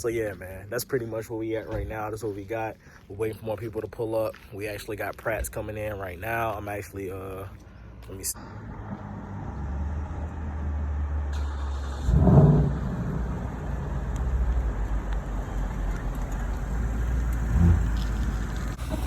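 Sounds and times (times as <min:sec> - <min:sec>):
car engine rumbling and revving: 0:08.4 - 0:19.0.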